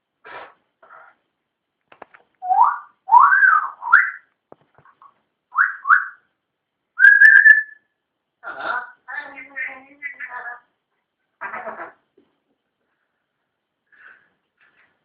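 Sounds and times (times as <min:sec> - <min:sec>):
parrot whistling: 0:02.4 - 0:04.3, 0:05.5 - 0:06.2, 0:07.0 - 0:07.8.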